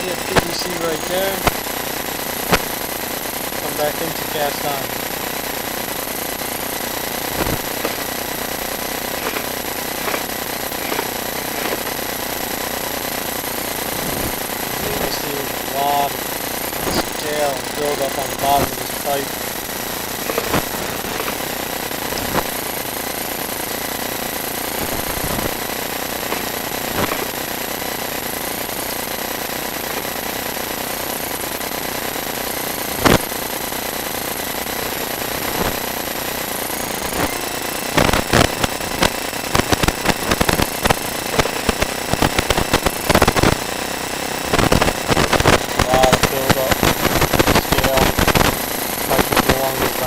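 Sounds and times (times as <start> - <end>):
steady hiss: 44.5 - 50.0.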